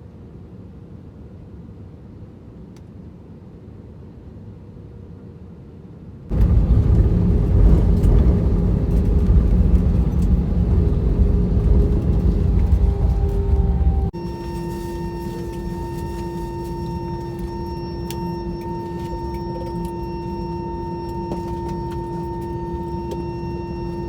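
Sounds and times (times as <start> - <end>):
airliner cabin hum: 6.3 - 24.0
low rumble with drone: 6.3 - 24.0.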